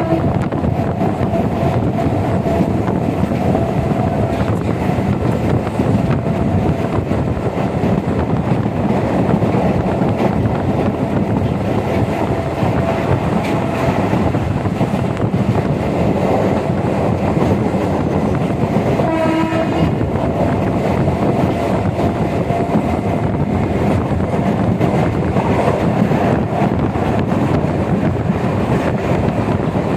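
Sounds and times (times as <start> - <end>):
train horn: 0.0 - 0.5, 19.0 - 20.1
train rumbling along track: 0.0 - 29.9.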